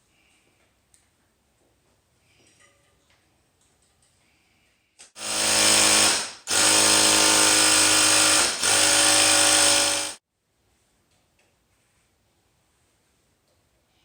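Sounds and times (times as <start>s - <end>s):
small electric motor running: 5.2s - 10.2s.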